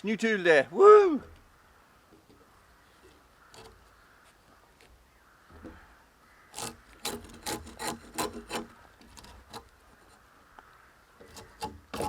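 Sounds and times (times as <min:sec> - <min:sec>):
scraping strokes on wood: 0:03.0 - 0:04.4, 0:06.5 - 0:10.2, 0:11.2 - 0:12.0.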